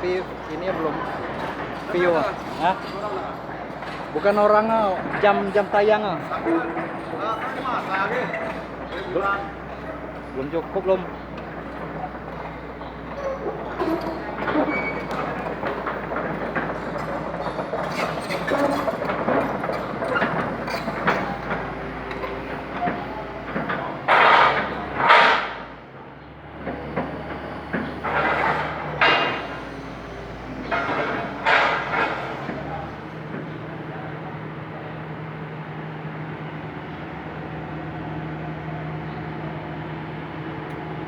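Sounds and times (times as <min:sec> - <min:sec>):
metal clattering and scraping: 0:11.4 - 0:25.6, 0:26.6 - 0:33.0.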